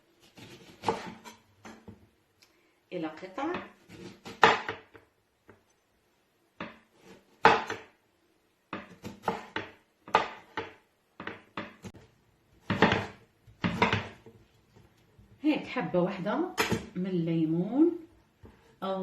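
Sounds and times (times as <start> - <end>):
knife cutting lemon on board: 0.2 - 1.9, 8.8 - 10.7.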